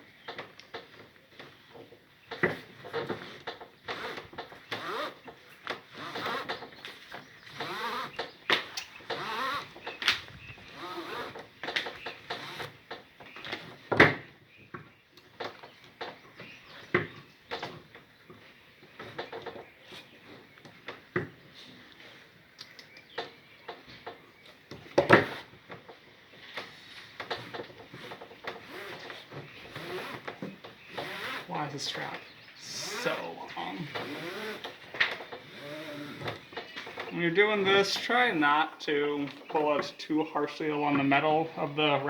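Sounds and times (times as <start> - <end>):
webbing pulled through: 27.4 - 36.5.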